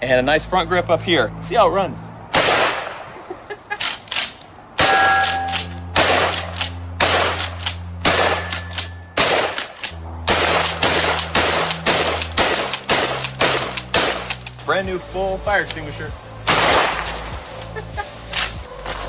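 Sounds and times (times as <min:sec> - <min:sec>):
shotgun shots: 0:02.3 - 0:03.1, 0:03.8 - 0:14.5, 0:16.5 - 0:17.2
steady low hum: 0:04.6 - 0:19.0.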